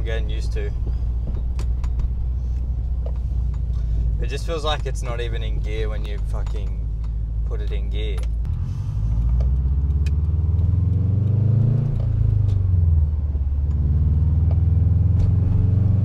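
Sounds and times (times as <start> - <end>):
car engine accelerating through gears: 8.3 - 16.0.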